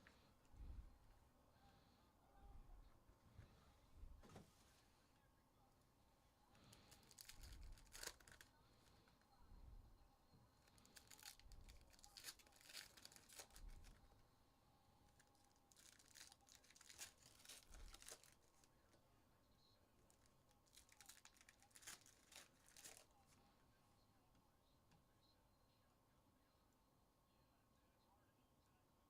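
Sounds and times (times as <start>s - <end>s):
wrappers crinkling and tearing: 6.6s - 8.5s, 10.6s - 14.0s, 15.1s - 18.7s, 20.1s - 23.2s.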